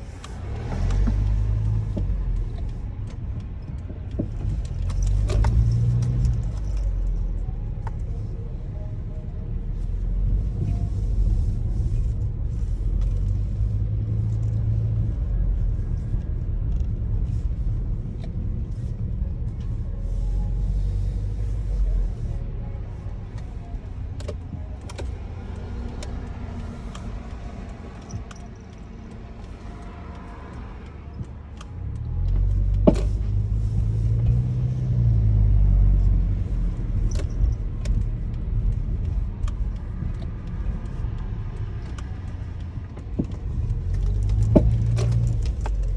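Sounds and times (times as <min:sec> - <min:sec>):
road rumble: 0:00.0 - 0:45.9
suspension knocks: 0:36.8 - 0:45.9.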